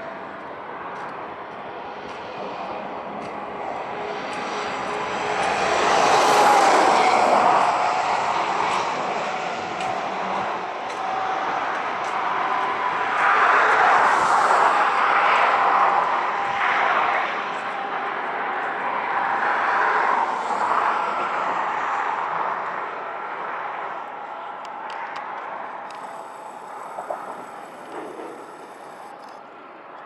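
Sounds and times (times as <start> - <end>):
engine and motor noise: 25.0 - 29.4.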